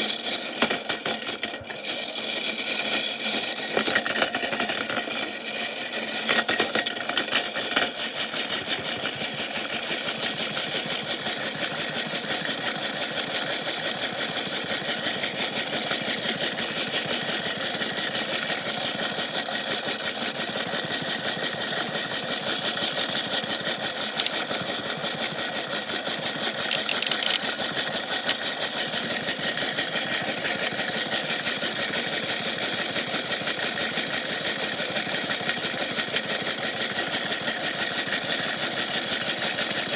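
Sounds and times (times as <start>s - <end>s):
rock rattling in washing machine: 3.4s - 5.3s, 15.2s - 30.3s.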